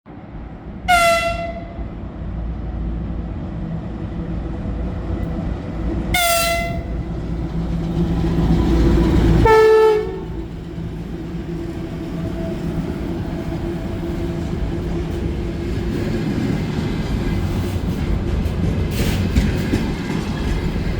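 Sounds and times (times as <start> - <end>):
freight train rumble: 0.1 - 20.9
locomotive horn toots: 0.9 - 1.8, 6.1 - 7.0, 9.4 - 10.5.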